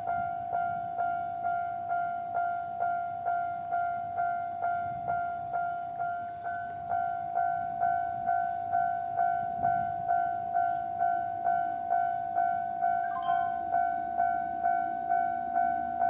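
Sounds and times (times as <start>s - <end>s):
level-crossing warning bell ringing: 0.0s - 16.0s.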